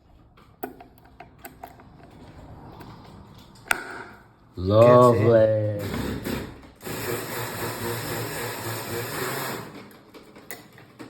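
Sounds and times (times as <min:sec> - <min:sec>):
handheld power tool buzzing: 0:05.9 - 0:10.0.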